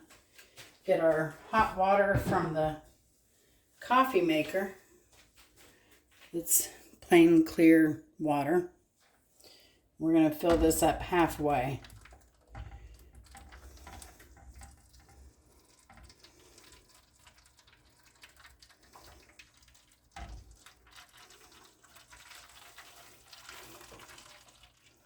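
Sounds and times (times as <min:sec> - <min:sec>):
hot water pouring into pan: 0:11.2 - 0:25.0.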